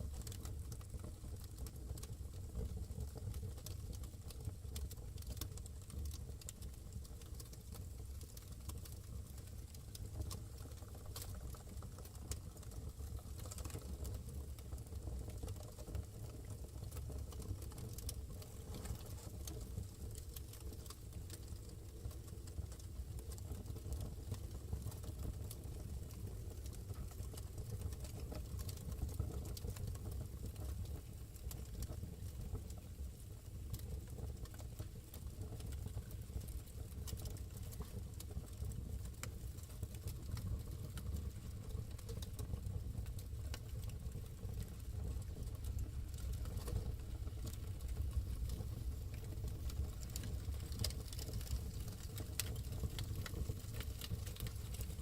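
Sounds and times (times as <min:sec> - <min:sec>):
logs crackling and popping: 0:00.0 - 0:55.0
fire flames rumbling: 0:38.2 - 0:55.0.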